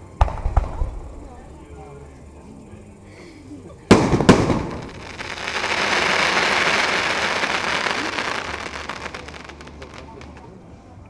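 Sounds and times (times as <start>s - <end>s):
firework shells bursting: 3.9s - 10.4s
firework crackling hiss: 3.9s - 10.5s.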